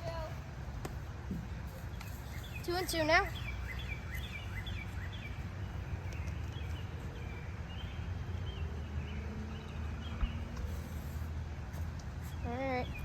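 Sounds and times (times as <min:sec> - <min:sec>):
faint bird chirps: 0:01.7 - 0:08.1.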